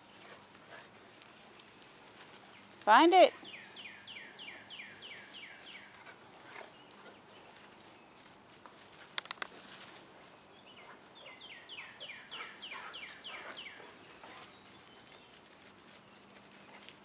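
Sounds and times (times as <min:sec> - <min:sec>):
dogs rustling on the ground: 0:00.0 - 0:17.0
sharp clicks: 0:09.1 - 0:09.6.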